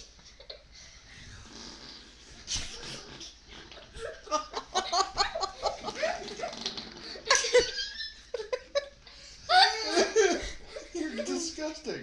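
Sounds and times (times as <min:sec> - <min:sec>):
giggling and laughter: 0:02.7 - 0:11.5.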